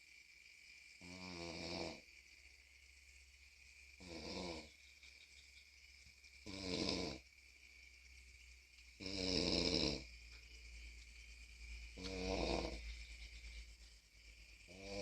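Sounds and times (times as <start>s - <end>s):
person snoring: 1.0s - 2.0s, 4.0s - 4.7s, 6.4s - 7.2s, 9.0s - 10.1s, 12.0s - 12.8s, 14.7s - 15.0s.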